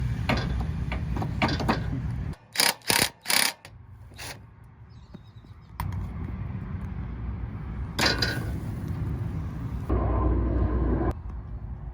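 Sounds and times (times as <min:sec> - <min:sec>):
mechanical ratcheting bursts: 0:02.4 - 0:04.4
low rumble: 0:06.1 - 0:11.9.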